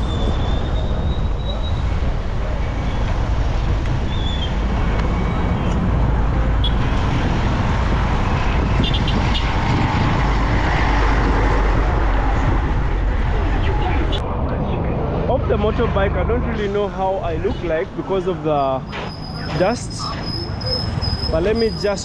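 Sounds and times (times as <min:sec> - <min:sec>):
wind noise: 0:00.0 - 0:15.7.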